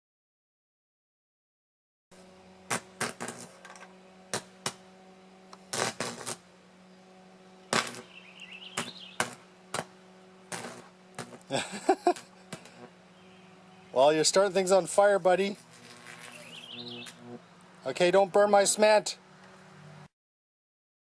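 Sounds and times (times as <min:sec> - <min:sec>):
low electrical hum: 0:02.2 - 0:20.1
electric arc crackling and snapping: 0:02.7 - 0:04.8, 0:05.5 - 0:06.5, 0:07.7 - 0:08.1, 0:08.7 - 0:13.0, 0:14.3 - 0:17.4.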